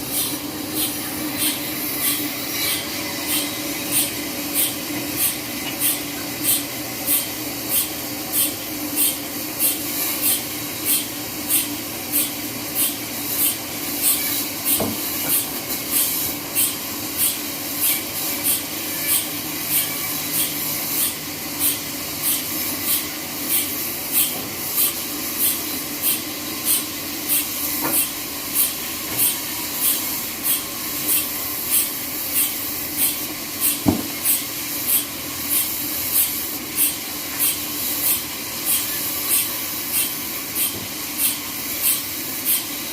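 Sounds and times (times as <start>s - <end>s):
band saw running: 0.0s - 42.9s.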